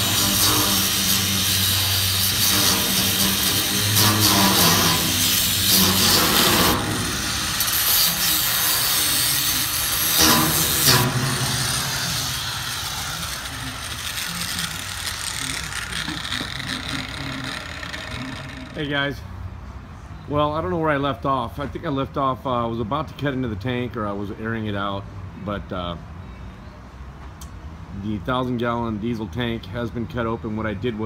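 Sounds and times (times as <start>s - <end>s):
power tool sawing steel: 0.0s - 19.1s.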